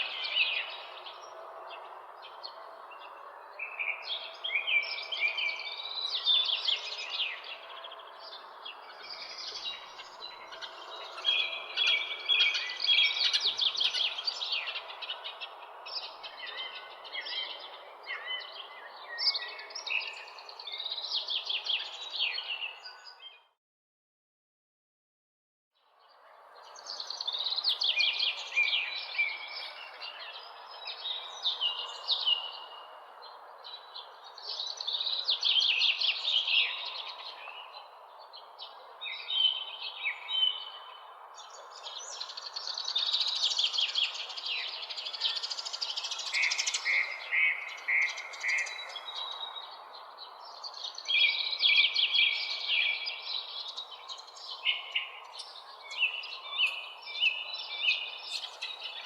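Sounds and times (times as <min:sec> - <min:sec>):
songbirds chirping trills: 0:25.9 - 0:59.0.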